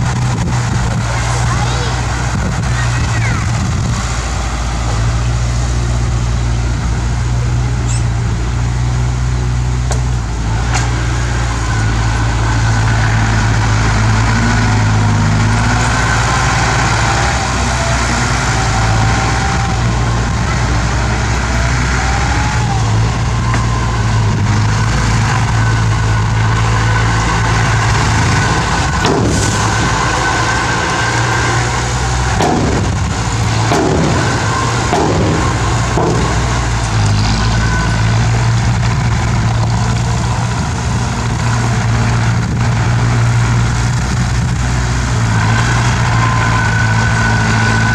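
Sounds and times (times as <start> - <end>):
bulldozer diesel engine: 0.0 - 47.9
metallic knocks: 27.9 - 31.6, 32.4 - 38.4.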